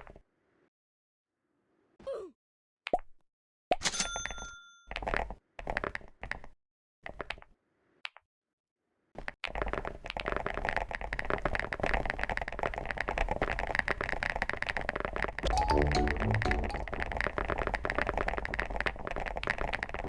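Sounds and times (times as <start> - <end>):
typing on a keyboard: 9.4 - 20.0.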